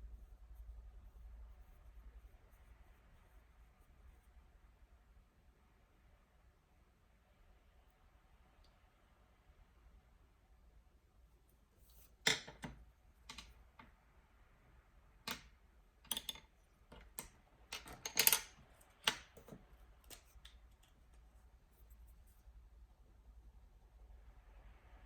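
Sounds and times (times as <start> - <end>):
desk clicks and taps: 12.2 - 13.9, 15.3 - 15.5, 16.1 - 20.6.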